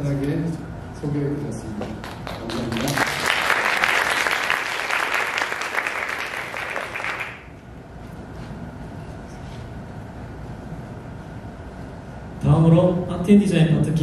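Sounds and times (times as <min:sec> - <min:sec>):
audience applauding: 0:02.0 - 0:07.6.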